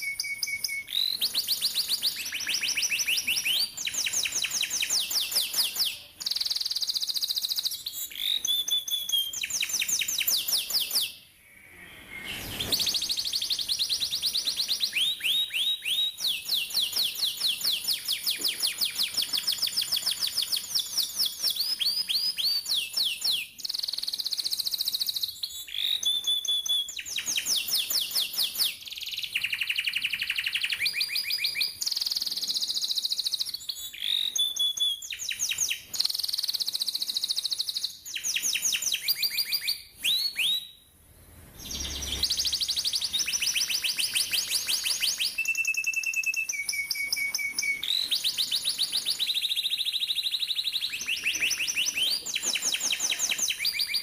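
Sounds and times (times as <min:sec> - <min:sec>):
canary singing trills: 0:41.6 - 0:54.0.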